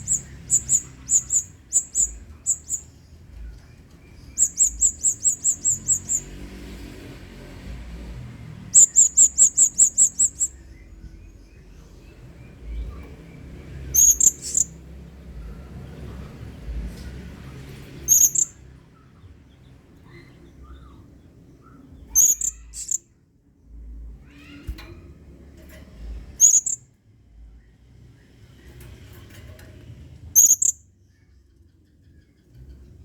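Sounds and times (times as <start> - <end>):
faint soft chirps: 0.0 - 6.3, 8.8 - 14.8, 16.9 - 19.3, 20.0 - 23.1, 23.8 - 26.8
parrot high-pitched calls: 4.4 - 6.3, 8.8 - 10.6, 13.9 - 14.7, 18.1 - 18.6, 22.1 - 23.0, 24.2 - 24.7, 26.4 - 26.8, 30.4 - 30.8.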